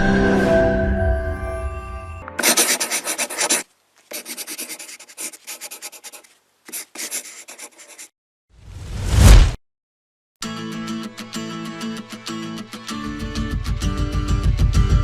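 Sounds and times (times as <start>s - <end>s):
quick rubbing strokes: 2.4s - 8.1s.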